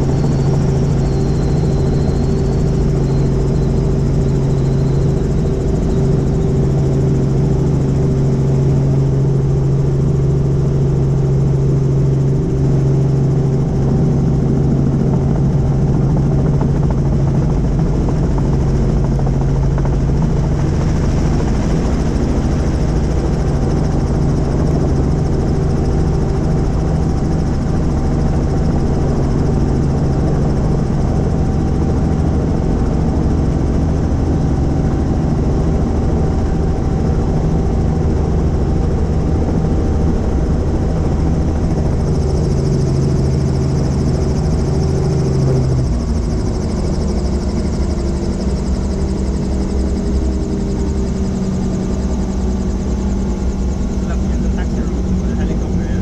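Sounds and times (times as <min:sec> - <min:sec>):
helicopter rotor and engine: 0:00.0 - 0:56.0.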